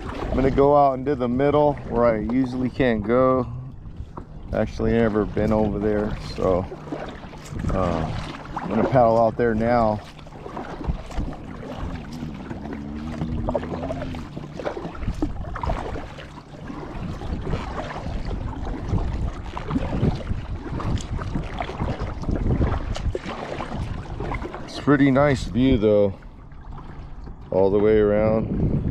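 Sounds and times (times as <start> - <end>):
paddle splashing in water: 0.0 - 28.6
wind on microphone: 0.0 - 28.9
paddle knocks: 3.8 - 24.8.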